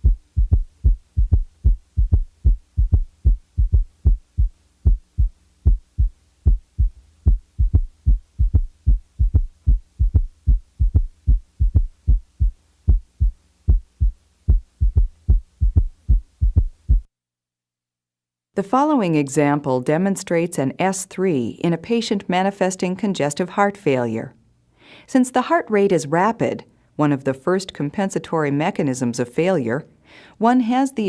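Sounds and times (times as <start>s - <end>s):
faint steady hum: 0.0s - 17.1s
galloping heartbeat: 0.0s - 17.1s.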